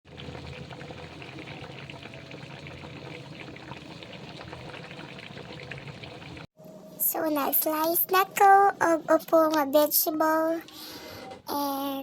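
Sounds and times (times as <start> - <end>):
food bubbling and crackling in pan: 0.0 - 6.5.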